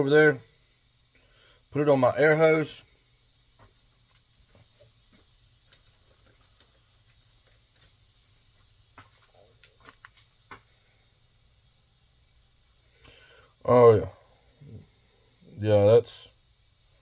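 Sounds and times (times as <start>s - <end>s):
faint clicks and taps: 8.6s - 10.7s.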